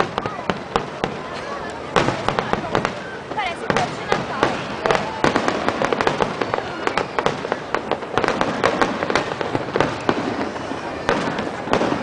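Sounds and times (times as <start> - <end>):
fireworks crackle: 0.0 - 12.0
fireworks cracks and bangs: 0.0 - 12.0.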